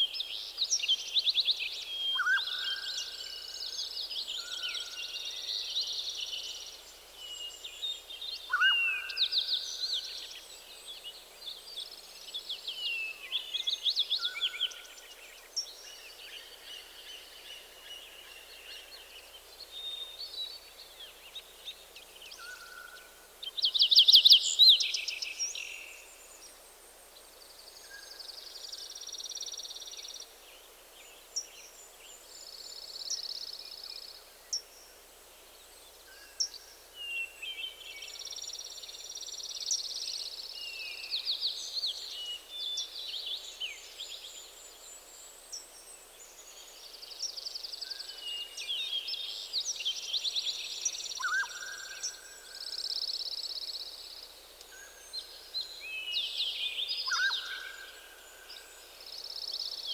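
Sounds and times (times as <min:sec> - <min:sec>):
soft steady hiss: 0:00.0 - 0:59.9
songbirds singing: 0:35.4 - 0:59.9.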